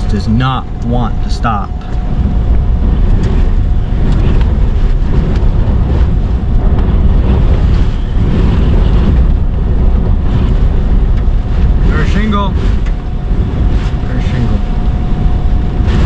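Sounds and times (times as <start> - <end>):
hurricane wind buffeting microphone: 0.0 - 16.0.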